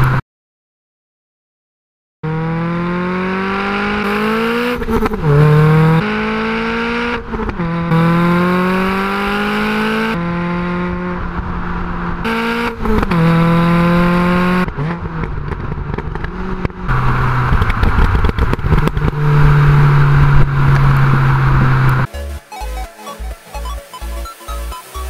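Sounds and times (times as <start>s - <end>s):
car engine revving: 2.2s - 22.1s
wind rushing on microphone: 14.6s - 22.1s.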